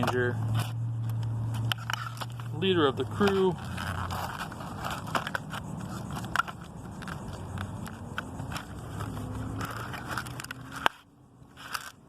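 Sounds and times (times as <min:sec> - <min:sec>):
toy packaging crinkling: 0:01.8 - 0:11.0.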